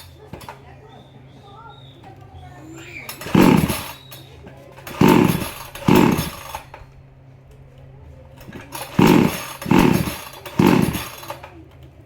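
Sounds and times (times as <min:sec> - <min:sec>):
chainsaw starter cord pulls: 0:03.0 - 0:06.9, 0:08.4 - 0:11.6.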